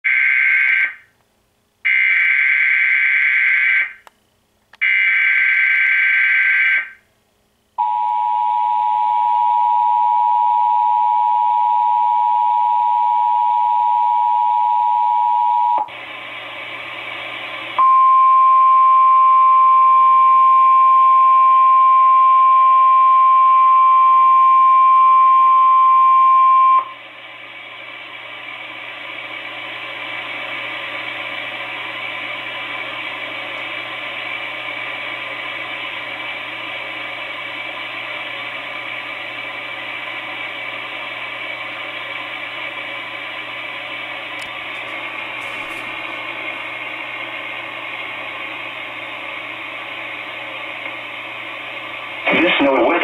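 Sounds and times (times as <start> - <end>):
two-tone attention signal: 17.8 - 26.9
radio static hiss: 51.7 - 53.0.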